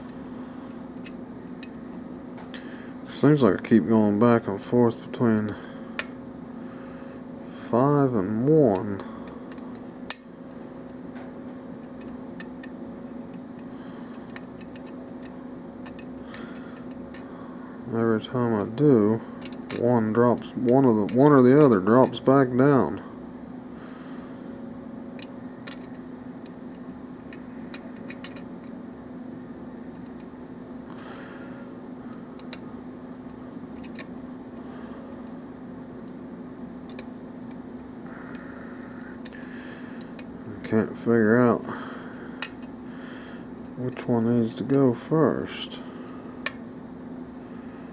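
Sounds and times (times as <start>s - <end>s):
steady low hum: 0.0s - 47.9s
lock pick clicking: 14.2s - 17.3s, 19.4s - 19.8s, 25.2s - 28.7s, 33.8s - 34.1s, 36.9s - 37.6s, 42.4s - 42.8s
lock pick clicking in lock: 33.8s - 34.1s.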